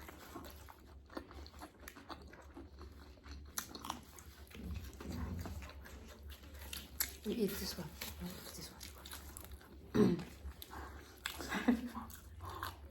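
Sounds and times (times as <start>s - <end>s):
chewing crispy fried chicken: 0.0s - 12.9s.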